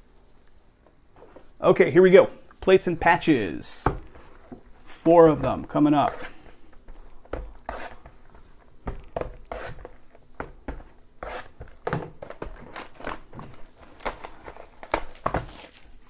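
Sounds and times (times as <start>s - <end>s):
plastic wrap and cardboard crinkling: 11.4s - 16.0s.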